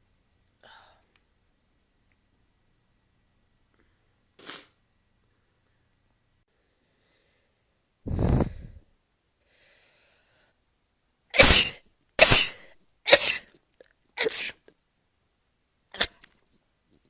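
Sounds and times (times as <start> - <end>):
person sneezing: 11.4 - 13.5, 14.2 - 14.7, 16.0 - 16.2.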